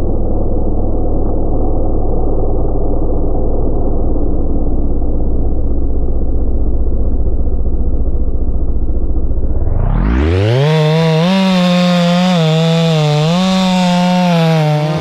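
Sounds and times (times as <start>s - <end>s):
muffled chainsaw idling: 10.5s - 15.0s.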